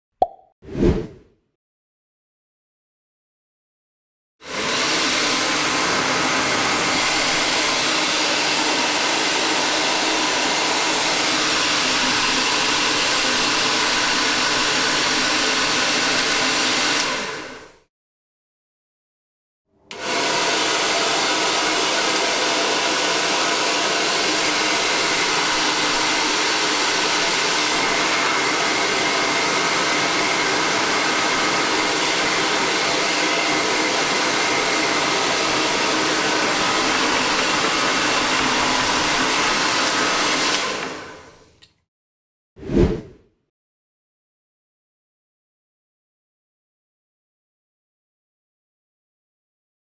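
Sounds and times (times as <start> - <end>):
hair dryer blowing: 4.4 - 17.9, 19.9 - 41.6.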